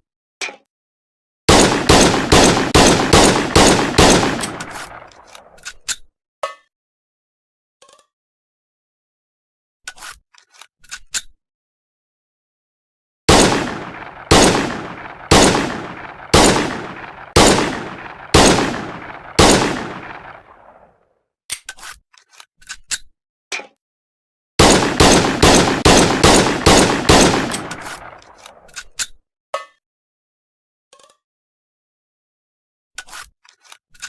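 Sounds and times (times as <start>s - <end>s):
pistol shots: 1.5s - 5.3s, 13.3s - 20.9s, 24.6s - 28.6s
metallic clicks of gun handling: 3.9s - 6.1s, 9.9s - 11.4s, 21.5s - 23.8s, 26.0s - 29.2s, 33.0s - 34.0s.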